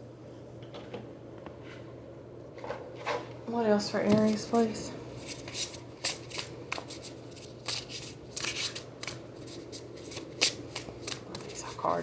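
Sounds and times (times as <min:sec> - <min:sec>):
cards being shuffled: 0:05.2 - 0:12.0.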